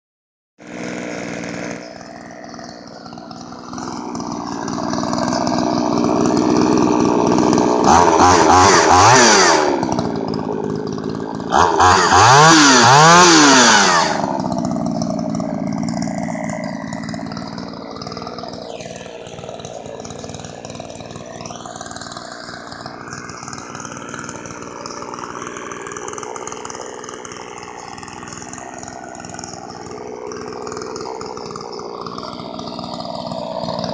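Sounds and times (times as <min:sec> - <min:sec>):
chainsaw revving and idling: 0:00.6 - 0:33.9.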